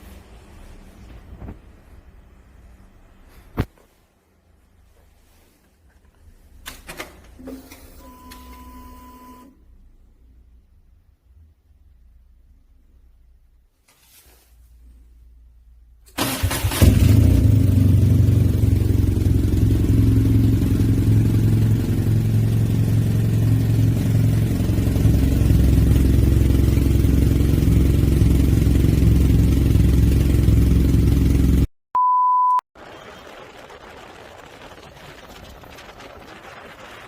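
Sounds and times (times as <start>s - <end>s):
short steady beep: 8.0s - 9.5s, 32.0s - 32.6s
motorcycle engine idling: 16.9s - 31.6s.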